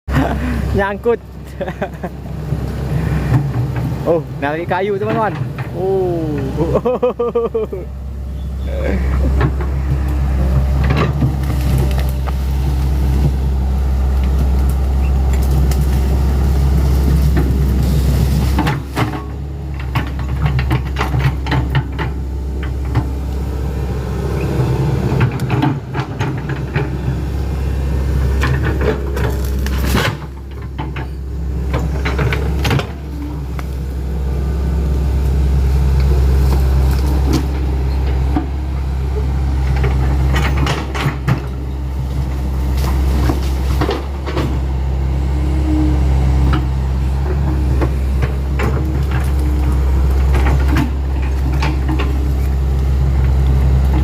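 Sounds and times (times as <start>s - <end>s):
excavator diesel engine under load: 0.1s - 54.0s
clanks and knocks of wood: 18.5s - 23.1s, 31.7s - 33.8s.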